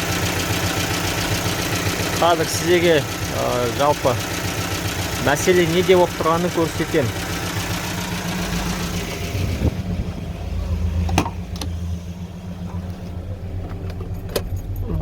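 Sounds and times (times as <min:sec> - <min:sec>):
engine tapping knock: 0:00.0 - 0:11.8
car engine idling: 0:00.0 - 0:15.0.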